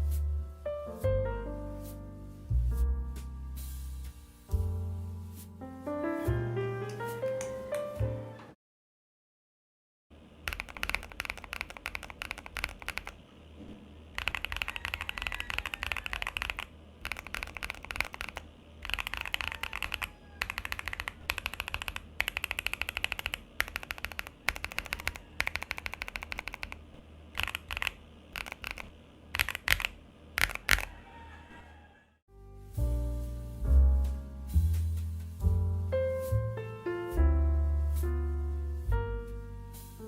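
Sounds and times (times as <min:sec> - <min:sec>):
mechanical keyboard typing: 0:10.4 - 0:13.2, 0:14.2 - 0:30.9.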